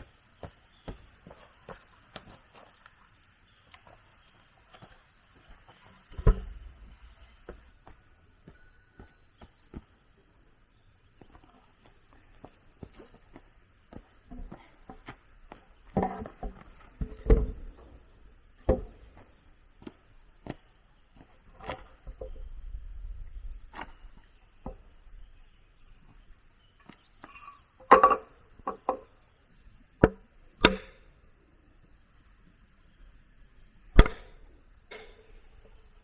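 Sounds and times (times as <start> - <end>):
hand tool chopping wood: 30.0 - 31.0, 34.0 - 34.4.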